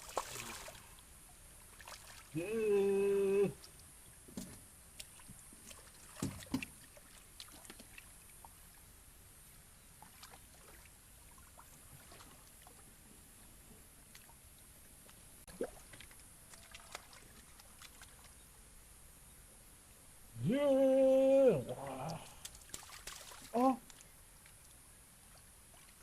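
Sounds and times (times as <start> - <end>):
hands splashing in muddy water: 15.5 - 18.4, 21.9 - 24.0.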